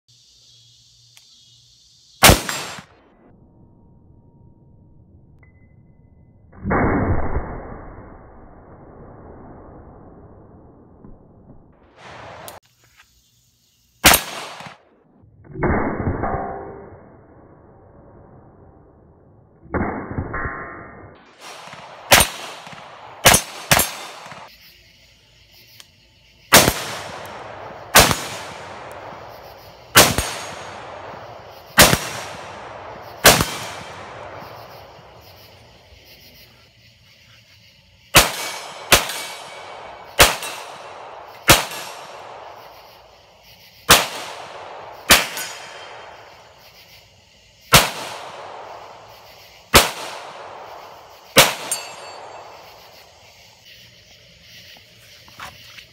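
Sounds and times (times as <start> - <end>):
gunshots with echoing tail: 2.2 - 3.0, 6.6 - 12.6, 14.0 - 14.8, 21.4 - 24.5, 26.5 - 35.6, 38.2 - 42.9, 43.9 - 46.6, 47.7 - 52.8.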